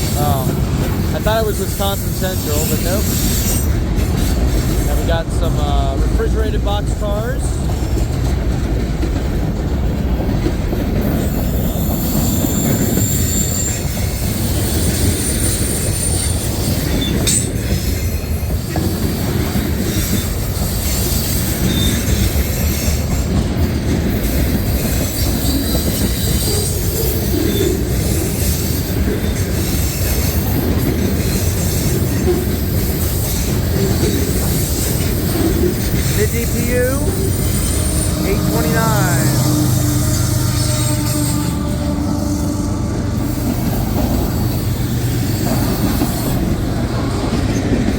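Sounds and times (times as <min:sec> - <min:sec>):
train wheels rumbling on rail: 0:00.0 - 0:47.9
high-pitched wheel squeals: 0:11.6 - 0:17.5.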